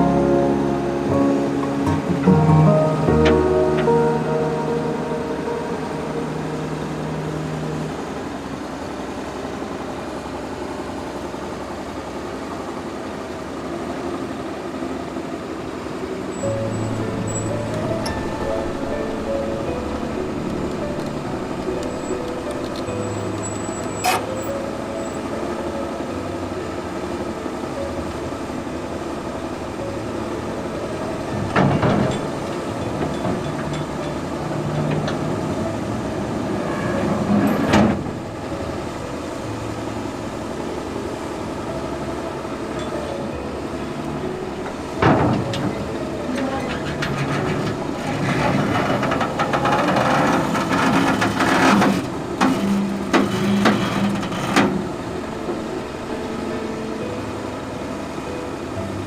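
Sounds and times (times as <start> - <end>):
heavy machine engine running: 0.0 - 59.0
loud metallic clank: 16.4 - 24.4.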